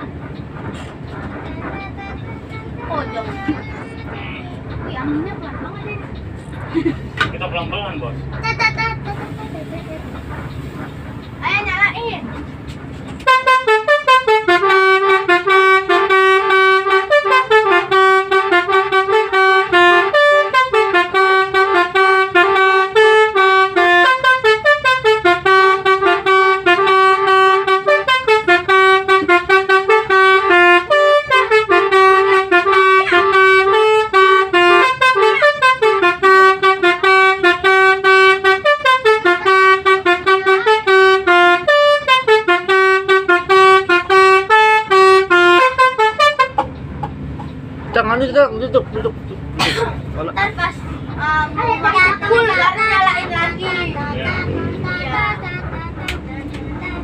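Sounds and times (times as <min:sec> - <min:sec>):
bus horn playing a tune: 0:13.2 - 0:47.3, 0:51.0 - 0:57.0.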